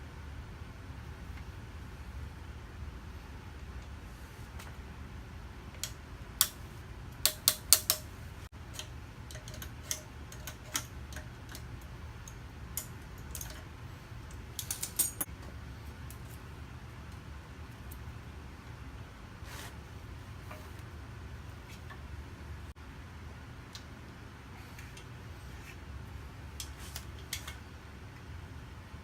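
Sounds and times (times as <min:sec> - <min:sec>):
steady low hum: 0:00.0 - 0:29.0
metal parts and tools clicking: 0:07.2 - 0:15.3.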